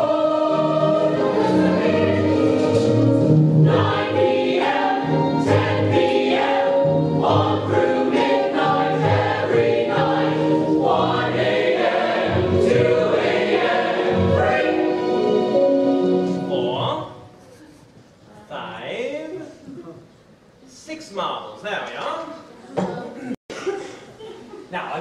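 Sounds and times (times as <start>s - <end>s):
chorus singing show tune: 0.0s - 17.0s.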